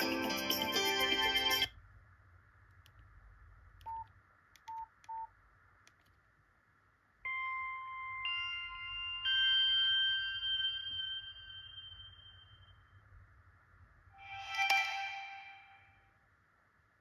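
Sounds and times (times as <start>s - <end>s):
keypad beeps: 3.8s - 5.3s.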